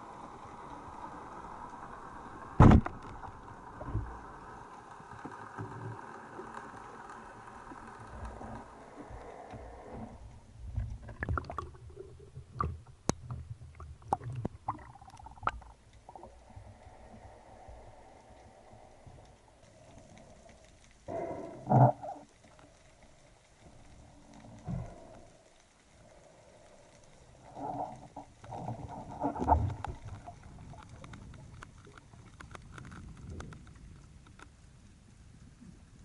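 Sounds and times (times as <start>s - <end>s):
steady underwater hiss: 0.0s - 36.0s
sharp underwater crack: 2.5s - 3.2s
underwater clicks and low knocks: 2.5s - 4.2s, 8.2s - 16.4s, 27.8s - 34.6s.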